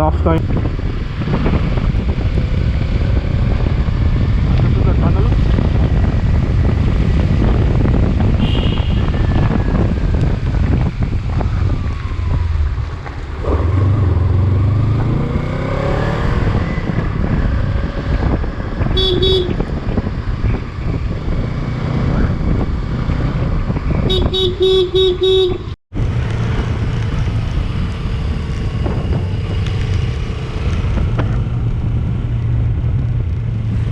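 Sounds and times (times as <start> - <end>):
motorcycle engine and road rumble: 0.0 - 33.9
wind buffeting microphone: 0.0 - 33.9
vehicle horn honking: 8.4 - 9.2, 19.0 - 19.6, 24.1 - 25.6.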